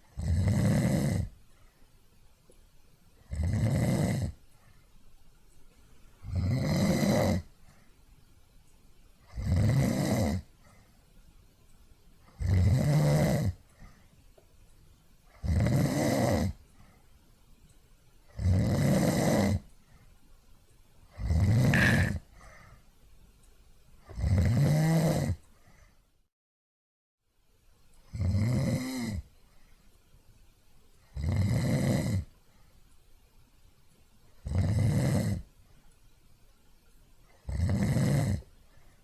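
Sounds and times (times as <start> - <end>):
person snoring: 0.1 - 1.3, 3.3 - 4.4, 6.2 - 7.5, 9.3 - 10.5, 12.3 - 13.6, 15.3 - 16.6, 18.3 - 19.6, 21.1 - 22.4, 24.1 - 25.4, 34.4 - 35.4, 37.4 - 38.5.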